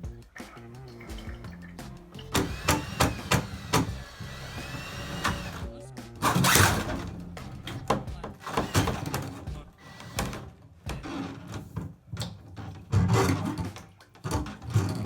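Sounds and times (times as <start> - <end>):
background music with bass and beat: 0.0 - 10.0.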